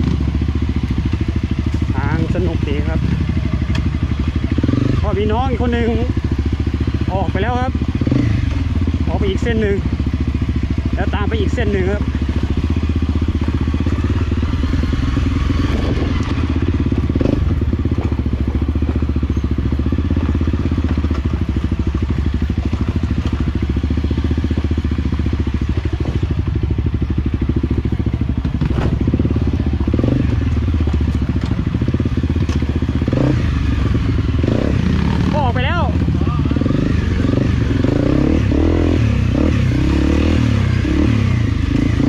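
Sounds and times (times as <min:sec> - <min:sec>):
dirt bike engine running: 0:00.0 - 0:42.0
bike knocks and clatters: 0:16.1 - 0:23.7, 0:28.4 - 0:33.3.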